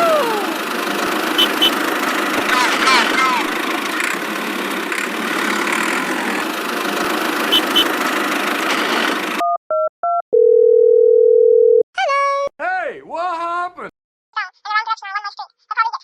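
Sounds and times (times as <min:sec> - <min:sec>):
engine-like running noise: 0:00.0 - 0:09.4.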